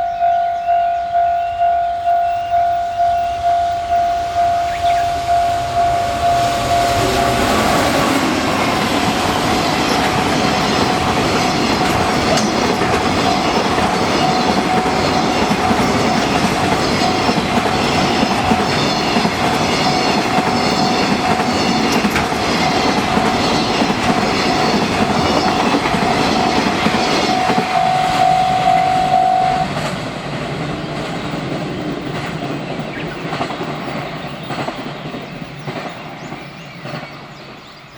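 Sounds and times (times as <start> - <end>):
level crossing warning bell: 0.0 - 29.8
freight train wheels clicking on rail joints: 3.6 - 28.3, 29.6 - 37.9.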